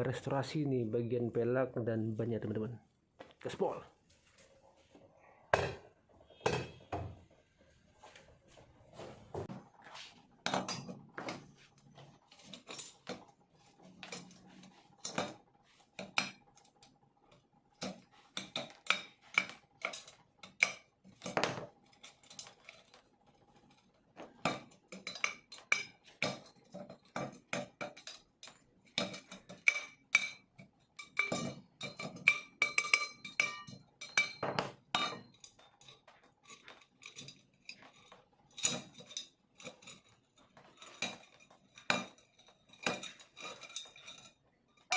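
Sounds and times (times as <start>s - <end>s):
hand tools clinking on metal rim: 12.3s - 44.9s.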